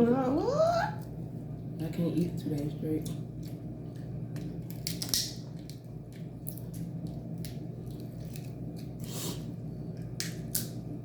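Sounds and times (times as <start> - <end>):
shellfish cracking and chewing: 2.5 - 9.1, 10.0 - 10.8.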